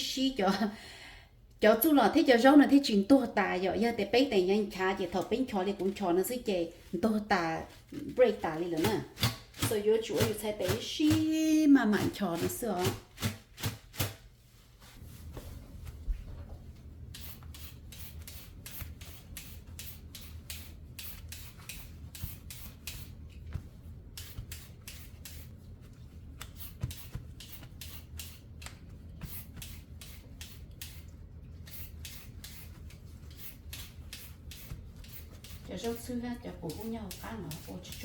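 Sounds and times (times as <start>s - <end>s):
low steady hum: 14.2s - 38.0s.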